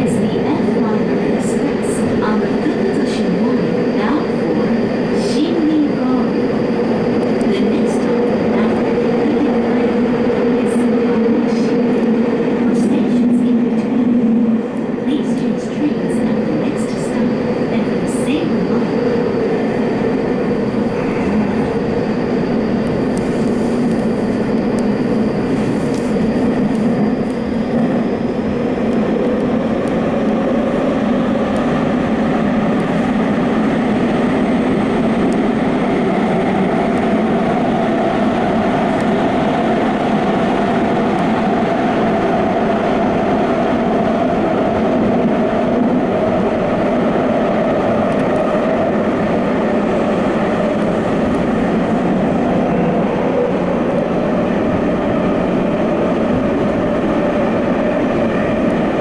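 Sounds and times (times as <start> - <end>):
faint train whine: 0.0 - 59.0
train wheels rumbling on rail: 0.0 - 59.0.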